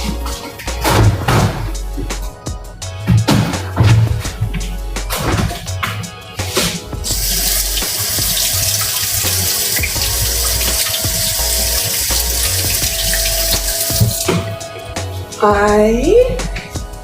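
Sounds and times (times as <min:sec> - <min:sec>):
background music with bass line: 0:00.0 - 0:17.0
tap running into sink: 0:07.1 - 0:14.6.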